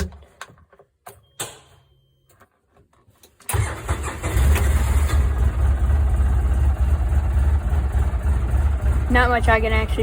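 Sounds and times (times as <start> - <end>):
engine starting and idling: 3.4 - 10.0.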